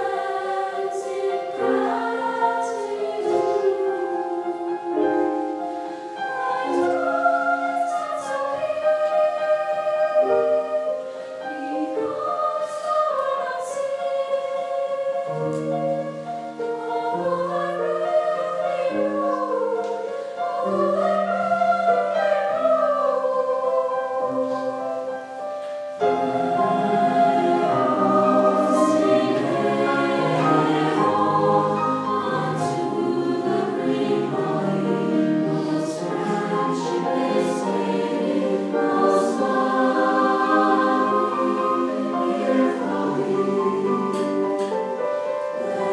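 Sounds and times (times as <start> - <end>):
choir singing: 0.0 - 45.9.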